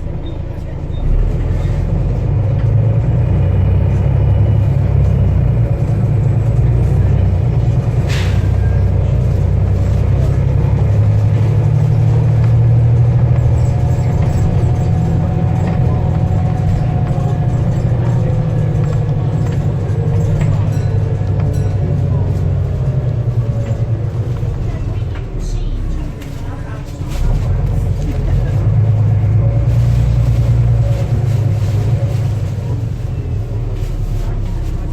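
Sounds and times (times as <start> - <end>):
bus diesel engine rumbling: 0.0 - 34.9.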